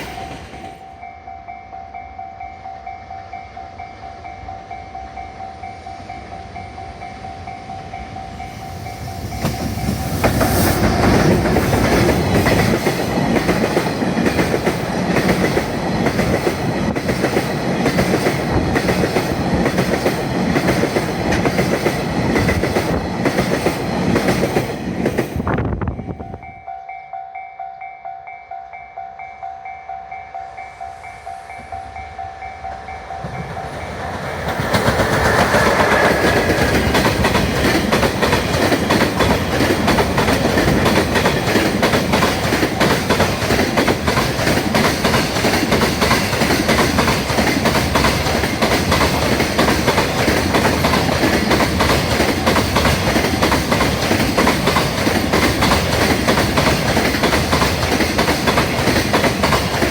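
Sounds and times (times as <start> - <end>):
train wheels clattering over rail joints: 9.4 - 25.4, 33.6 - 59.9.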